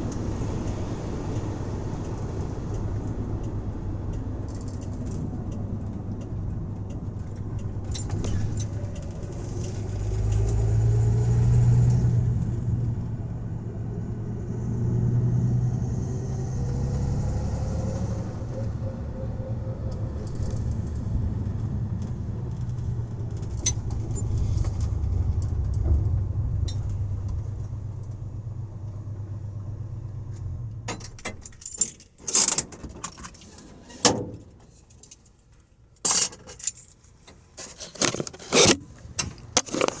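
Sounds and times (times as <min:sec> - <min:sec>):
van engine idling: 0:00.0 - 0:14.6, 0:18.2 - 0:31.5.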